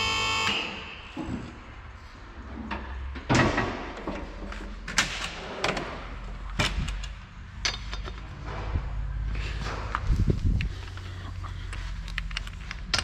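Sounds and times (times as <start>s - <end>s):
sharp knocks and clatters: 2.7s - 10.1s.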